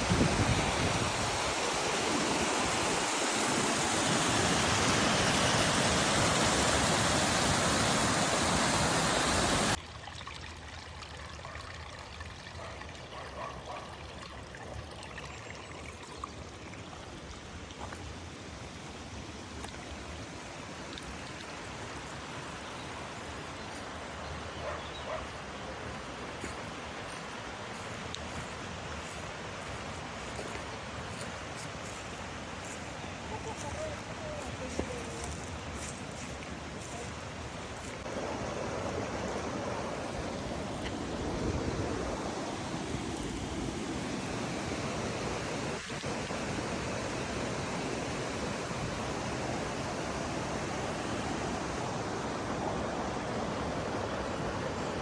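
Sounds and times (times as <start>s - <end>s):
waterfall rushing: 0.0s - 9.8s, 29.2s - 55.0s
steady flow of water: 0.0s - 55.0s.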